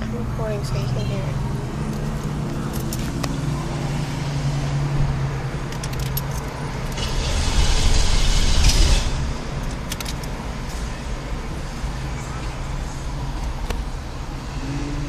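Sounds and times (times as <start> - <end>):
car engine cranking: 0.0 - 3.8, 5.4 - 10.9
keys jingling: 1.9 - 3.2, 5.7 - 7.0, 9.6 - 10.4.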